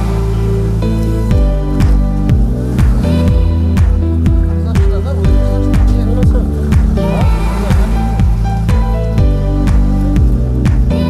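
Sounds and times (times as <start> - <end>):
background music with steady beat: 0.0 - 11.0.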